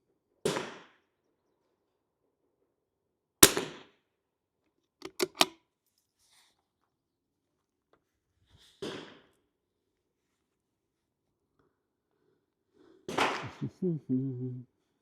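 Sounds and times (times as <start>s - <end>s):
rifle shots: 3.4s - 3.7s
quick clicks: 5.0s - 5.5s.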